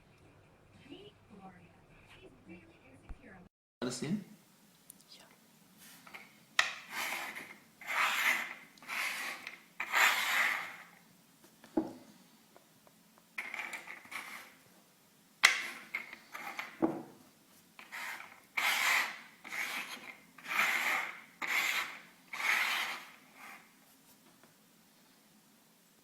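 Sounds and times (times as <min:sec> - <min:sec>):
rubbing strokes: 0:05.8 - 0:11.0, 0:13.4 - 0:14.6, 0:15.5 - 0:24.2.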